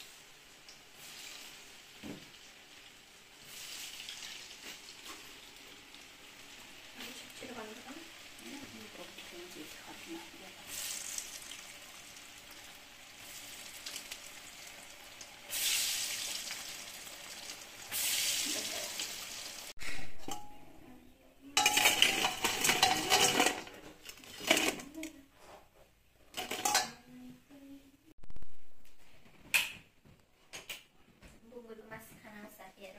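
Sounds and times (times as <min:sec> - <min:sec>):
food sizzling in hot oil: 0:00.0 - 0:19.8
metal utensils clinking on pan: 0:20.2 - 0:20.6, 0:21.6 - 0:24.9, 0:26.3 - 0:27.0.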